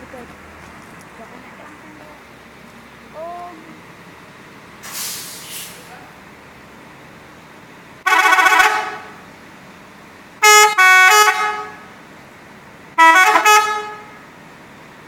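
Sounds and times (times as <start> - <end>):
multi-tone musical air horn: 8.1 - 9.1, 10.4 - 11.9, 13.0 - 14.2.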